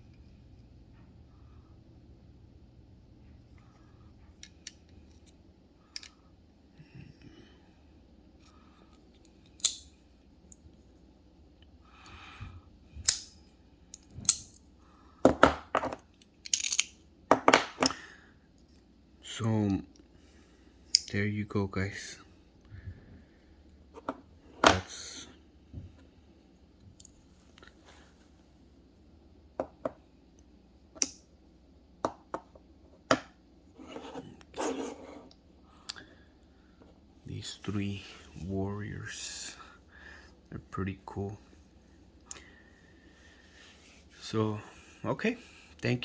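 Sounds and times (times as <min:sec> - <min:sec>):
knives clicking and tapping: 0:09.6 - 0:09.9, 0:13.9 - 0:14.6, 0:16.4 - 0:16.9
metal knives clicking and clinking: 0:16.4 - 0:16.9.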